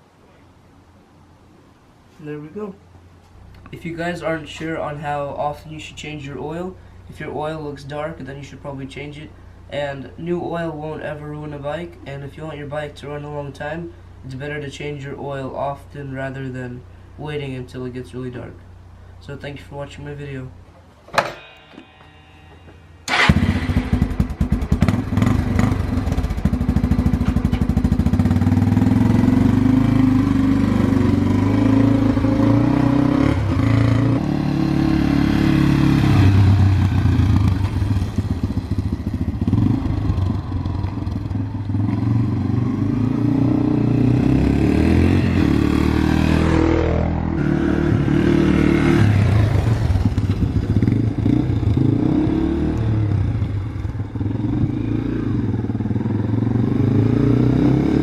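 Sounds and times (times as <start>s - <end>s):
dirt bike engine revving: 23.0s - 58.0s.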